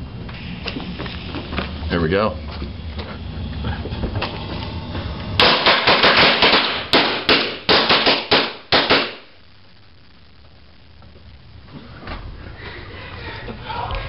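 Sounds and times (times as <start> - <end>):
firecrackers banging: 5.4 - 9.3.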